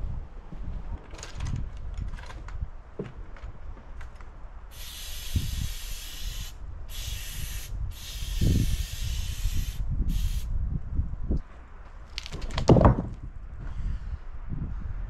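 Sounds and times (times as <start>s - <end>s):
low thuds of wood handling: 0.5s - 4.3s, 11.4s - 13.8s
pressurized spray hissing: 4.7s - 10.5s.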